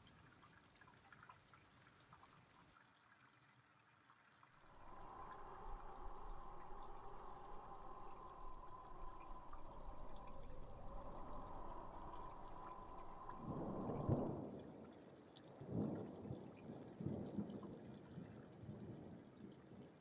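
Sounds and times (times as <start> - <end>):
steady rain: 3.6 - 20.0
thunder rumbling: 4.6 - 15.0.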